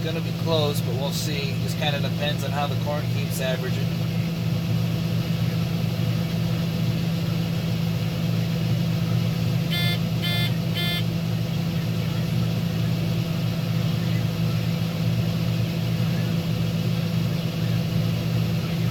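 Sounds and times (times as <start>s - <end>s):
combine harvester droning: 0.0s - 18.9s
short electronic beeps: 9.7s - 11.1s.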